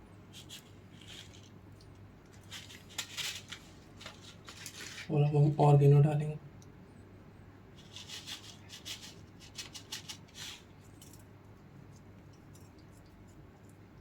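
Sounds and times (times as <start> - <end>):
dried herbs sprinkling rustle: 0.3 - 5.1, 7.8 - 13.8.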